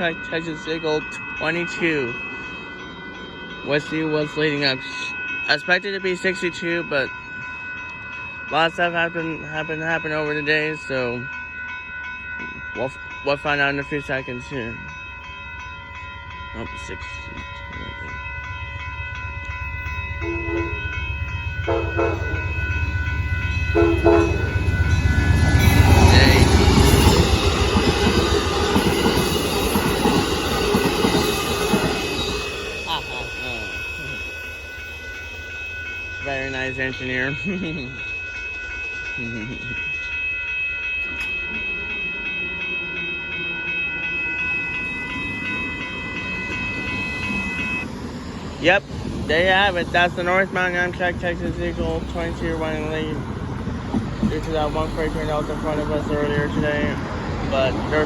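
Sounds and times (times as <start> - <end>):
crossing bell ringing: 0.0 - 58.0
rail cars rumbling: 0.0 - 58.0
train passing with wheel noise: 0.0 - 58.0
train horn blasts: 20.2 - 20.9, 21.6 - 22.4, 23.7 - 24.7.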